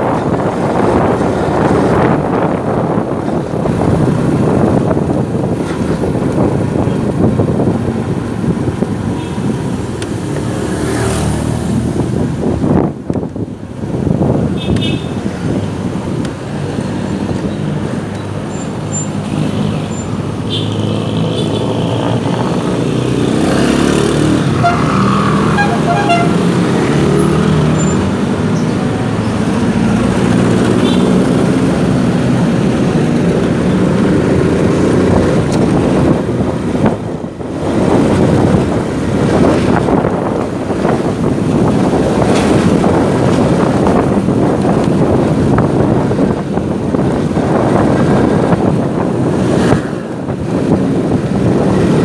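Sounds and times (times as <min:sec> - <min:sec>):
vehicle horn toots: 0:24.6 - 0:26.5.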